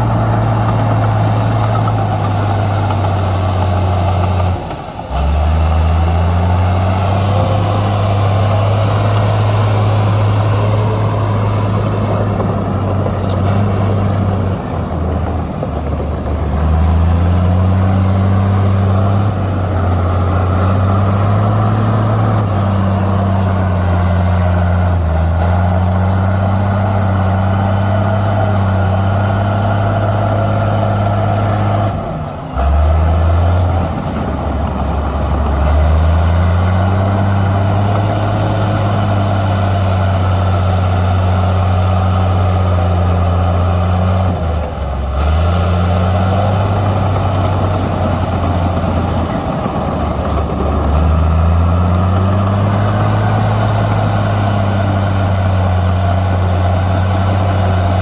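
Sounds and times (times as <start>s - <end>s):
heavy diesel engine running: 0.0s - 58.0s.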